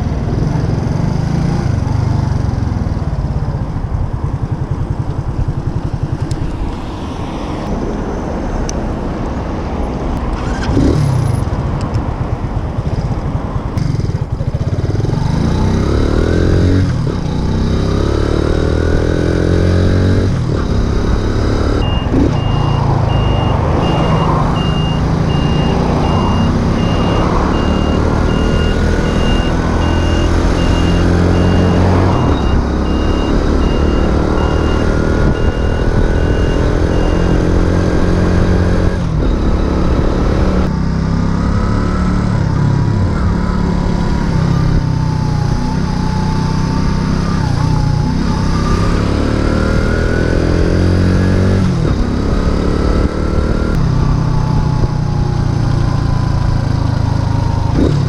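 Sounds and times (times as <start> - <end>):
moped engine revving: 13.8 - 53.8
high beeping: 21.4 - 40.6.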